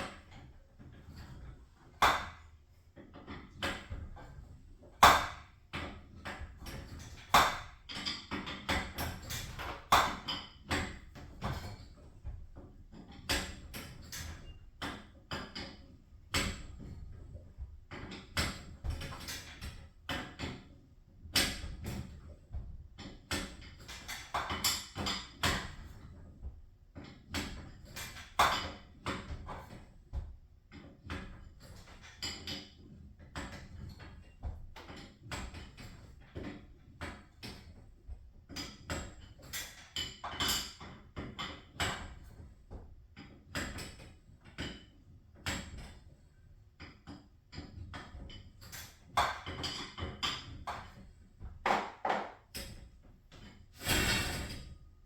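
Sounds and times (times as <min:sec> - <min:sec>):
metal tools knocking and clanking: 0:51.6 - 0:52.7.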